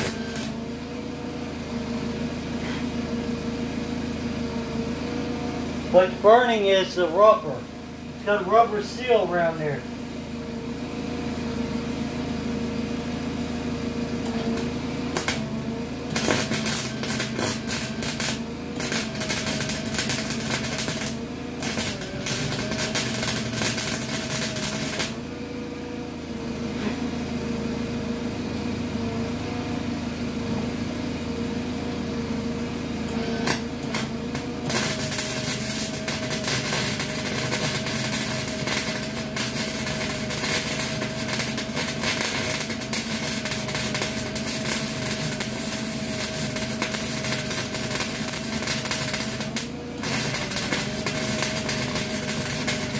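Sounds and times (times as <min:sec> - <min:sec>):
welding arc crackling: 0:00.0 - 0:09.9, 0:13.9 - 0:25.4, 0:33.0 - 0:52.9
steady hum: 0:04.3 - 0:13.1.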